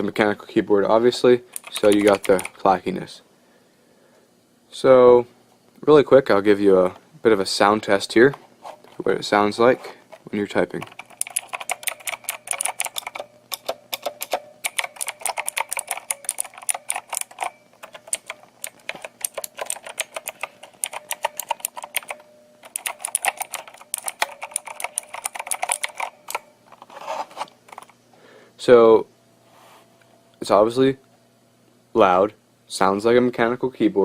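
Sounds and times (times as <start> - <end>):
loud mechanical key clacks: 1.5 - 2.6, 10.1 - 26.5
spring ringing in keyboard: 1.6 - 2.6, 10.8 - 26.6.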